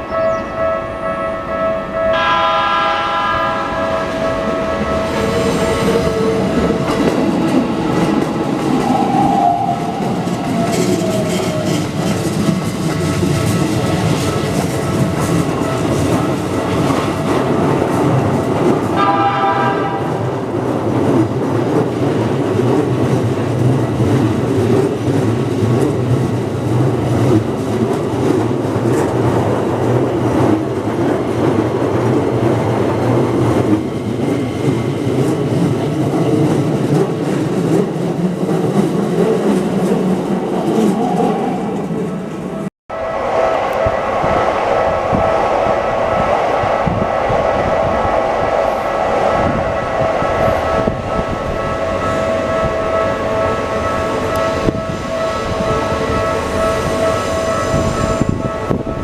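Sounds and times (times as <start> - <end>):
train wheels rumbling on rails: 0.0 - 59.0
train horn blast: 0.1 - 5.2, 18.9 - 20.5, 42.9 - 46.2.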